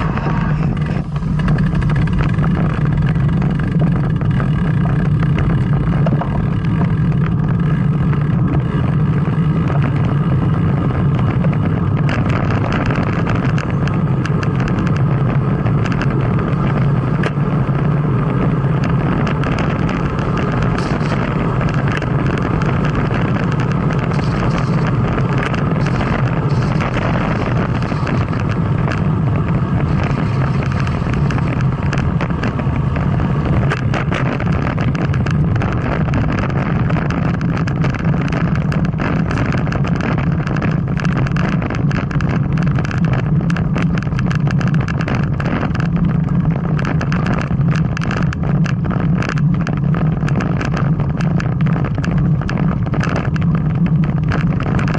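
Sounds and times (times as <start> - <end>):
wind and road rumble: 0.0 - 54.9
small rattling clicks: 0.7 - 54.9.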